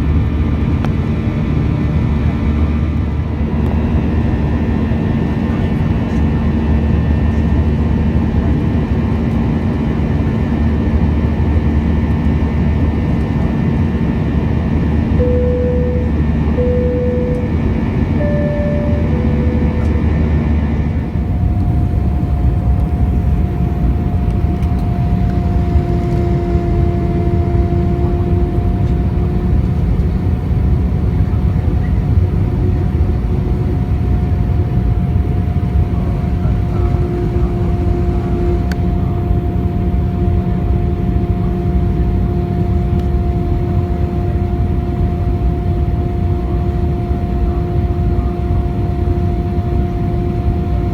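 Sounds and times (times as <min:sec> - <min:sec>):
jet engine and airflow roar: 0:00.0 - 0:50.9
lower hum: 0:10.6 - 0:32.2, 0:34.8 - 0:50.9
steady tonal hum: 0:14.0 - 0:31.6, 0:35.2 - 0:50.9.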